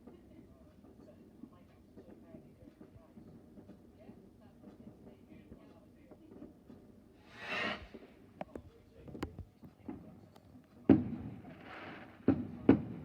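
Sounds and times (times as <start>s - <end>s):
fireworks fizzing hiss: 7.2s - 8.1s
faint fireworks pops: 10.9s - 13.0s.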